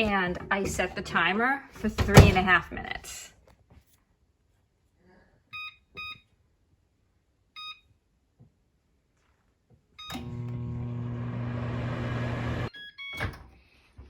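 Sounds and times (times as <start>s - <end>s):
microwave oven hum and fan: 10.1s - 12.7s
microwave keypad beeping: 12.1s - 13.3s.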